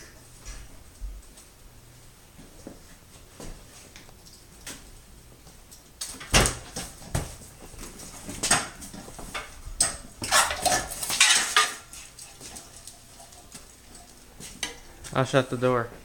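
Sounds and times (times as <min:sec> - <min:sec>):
scraping and rustling: 0:06.6 - 0:15.0.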